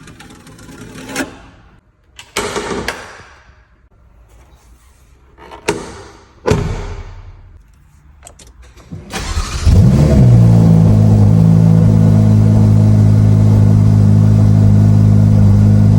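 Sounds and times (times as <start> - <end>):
car engine starting and idling: 8.6 - 15.9.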